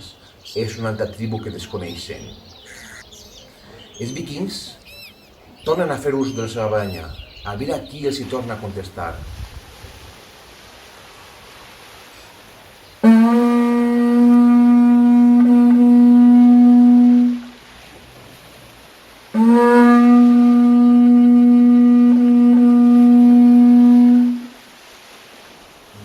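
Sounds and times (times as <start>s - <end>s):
ox horn notes: 13.0s - 17.6s, 19.3s - 24.6s.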